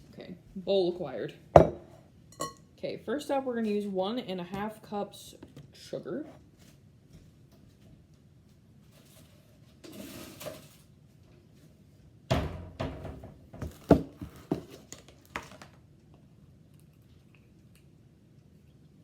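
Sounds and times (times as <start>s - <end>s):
kitchen containers knocking and clattering: 1.6s - 2.6s, 12.3s - 15.6s.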